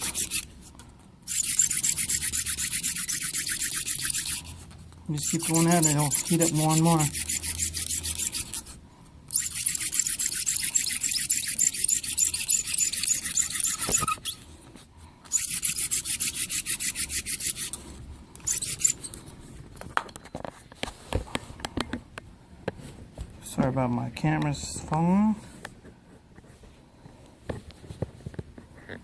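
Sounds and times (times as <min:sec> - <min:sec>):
hand drill wood squeaking: 0:00.0 - 0:00.5, 0:01.3 - 0:04.5, 0:05.2 - 0:08.7, 0:09.3 - 0:14.4, 0:15.3 - 0:17.8, 0:18.4 - 0:19.1.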